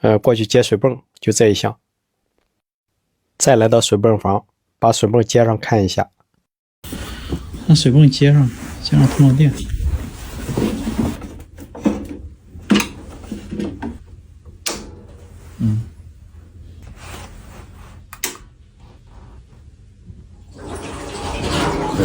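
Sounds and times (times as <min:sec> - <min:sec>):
equipment clicks and knocks: 0:11.6 - 0:15.2.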